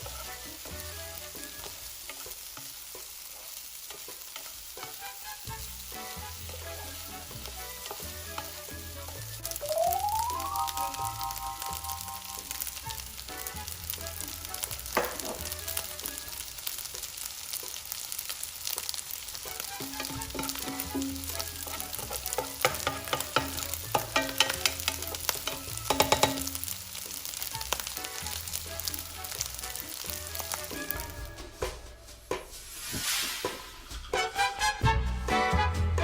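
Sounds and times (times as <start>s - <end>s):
rice sizzling in a hot pan: 0.0s - 34.5s
spatula scraping a pan: 5.9s - 9.3s, 19.4s - 28.5s.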